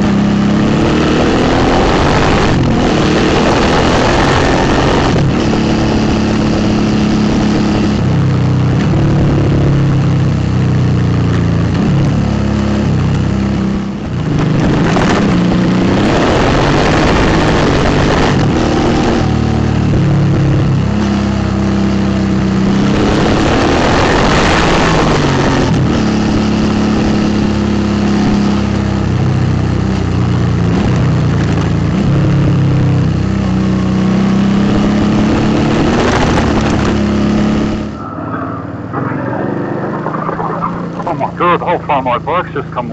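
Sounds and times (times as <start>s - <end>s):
motorcycle engine running: 0.0s - 38.0s
wind noise rushing: 35.0s - 41.6s.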